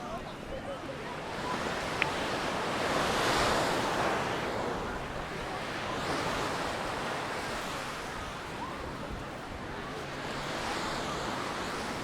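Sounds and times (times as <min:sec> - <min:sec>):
waves washing up beach: 0:01.0 - 0:12.0.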